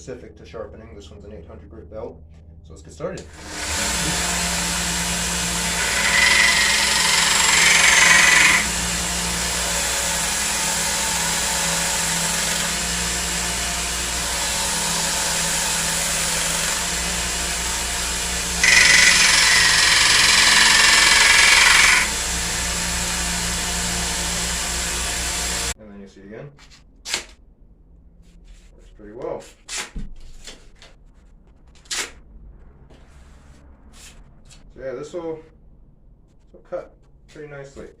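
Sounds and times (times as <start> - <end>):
belt grinder running: 3.3 - 25.8.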